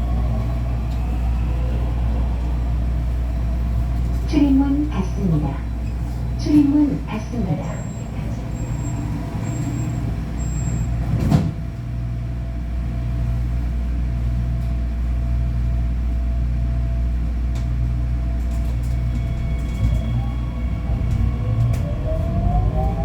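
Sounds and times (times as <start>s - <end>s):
train running rumble: 0.0s - 23.0s
train doors thudding shut: 11.0s - 11.8s.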